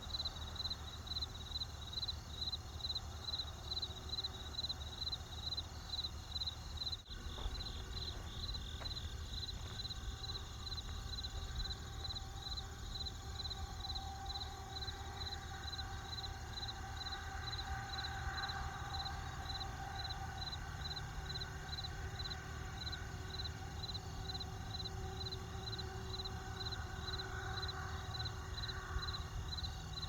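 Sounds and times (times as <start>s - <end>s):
crickets chirping: 0.0s - 30.0s
low steady rumble: 6.3s - 30.0s.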